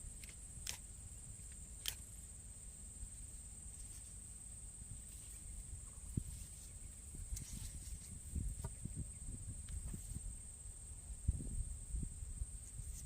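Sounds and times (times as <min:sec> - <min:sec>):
low wind rumble: 0:00.0 - 0:13.0
sharp clicks: 0:00.2 - 0:00.9, 0:01.5 - 0:02.1.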